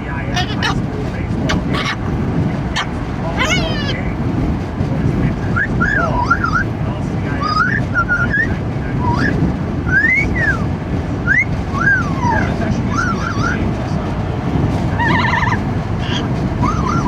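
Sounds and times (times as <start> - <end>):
wind and road noise in car: 0.0 - 17.0
parrot whistled calls: 1.5 - 2.0, 2.8 - 4.0, 5.6 - 6.6, 7.4 - 10.6, 11.3 - 13.6, 15.0 - 17.0.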